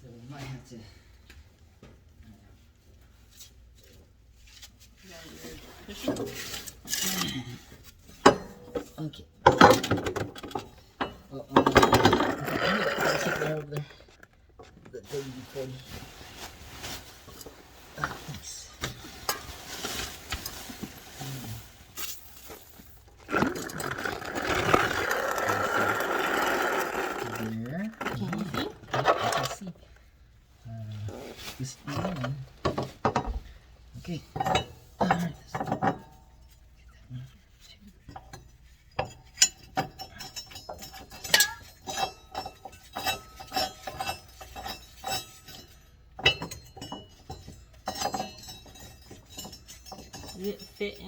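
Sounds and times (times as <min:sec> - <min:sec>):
metal parts clinking: 0:38.1 - 0:51.0.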